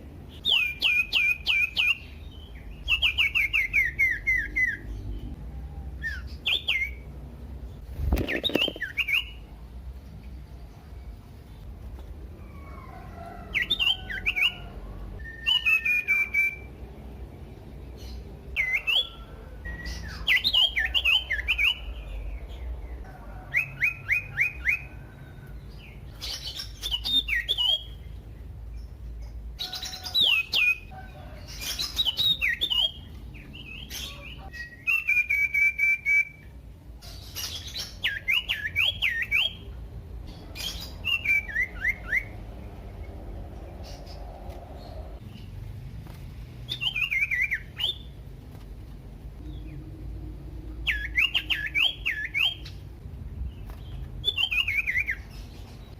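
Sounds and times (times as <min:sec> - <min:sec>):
bird singing whistled notes: 0:00.3 - 0:05.2, 0:06.0 - 0:07.1, 0:08.4 - 0:09.4, 0:15.2 - 0:16.7, 0:18.6 - 0:22.3, 0:26.2 - 0:28.1, 0:31.6 - 0:36.5, 0:37.3 - 0:39.7, 0:40.6 - 0:42.4, 0:46.7 - 0:48.2, 0:50.8 - 0:52.8, 0:54.2 - 0:55.3.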